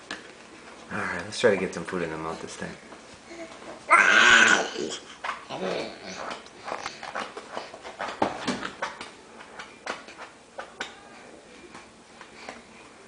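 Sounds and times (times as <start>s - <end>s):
baby making vocal noises: 3.3s - 6.2s.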